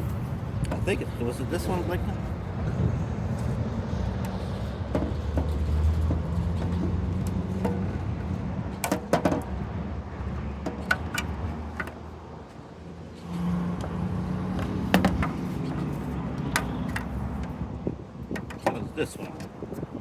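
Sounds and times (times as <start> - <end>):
engine humming: 0.0 - 20.0.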